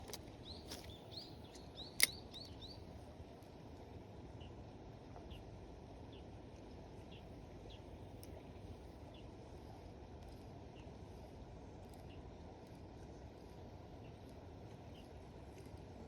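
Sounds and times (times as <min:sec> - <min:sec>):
small bird chirping: 0:00.4 - 0:02.8.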